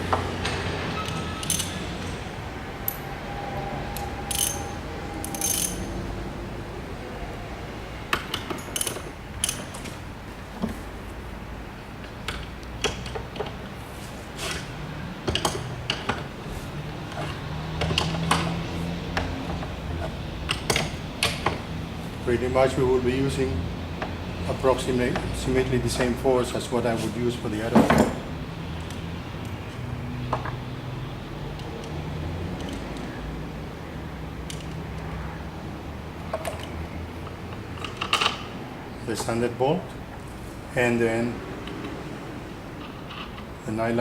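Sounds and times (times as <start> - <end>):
hand ratchet clicking: 4.0 - 5.8.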